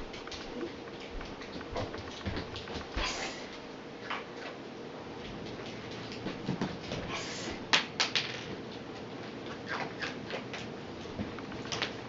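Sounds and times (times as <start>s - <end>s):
dog claws clicking on hard floor: 7.7s - 12.0s.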